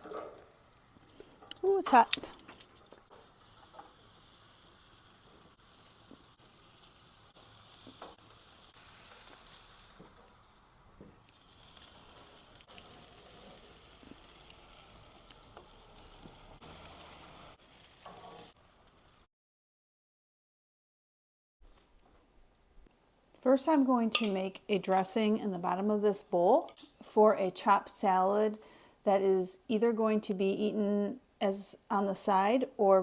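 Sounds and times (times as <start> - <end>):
chicken sizzling on grill: 3.0 - 19.3.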